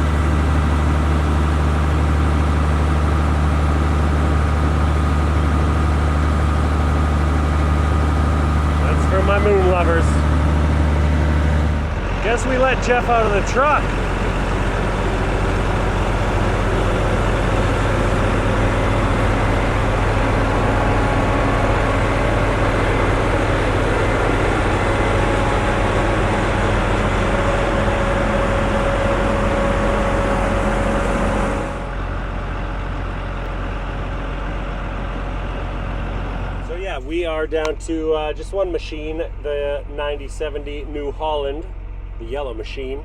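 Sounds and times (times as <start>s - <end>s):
heavy vehicle engine droning: 0.0s - 43.0s.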